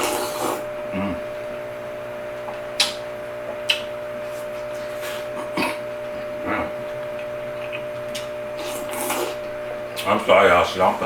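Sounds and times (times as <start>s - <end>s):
steady background hum: 0.0s - 11.0s
eating clicks and mouth sounds: 2.8s - 3.9s, 6.6s - 10.1s.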